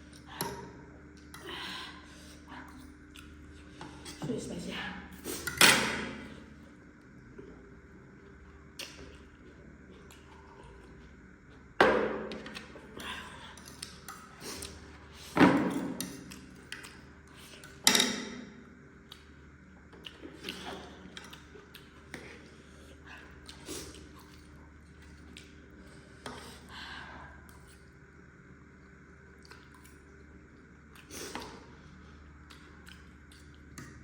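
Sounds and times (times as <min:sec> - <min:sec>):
small clicks and mouth sounds: 0:19.0 - 0:22.4, 0:29.4 - 0:30.1, 0:32.4 - 0:34.0.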